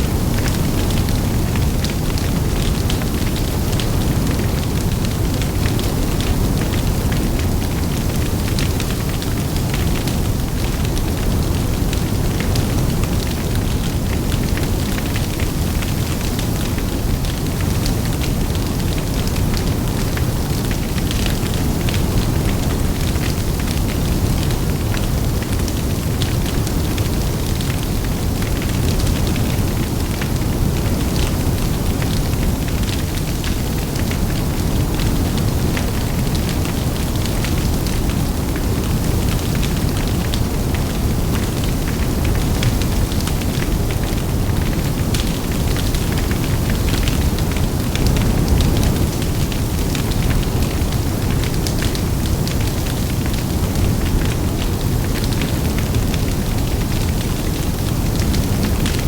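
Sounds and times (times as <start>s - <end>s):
fire crackling and popping: 0.1s - 59.0s
fire rushing: 31.8s - 55.2s.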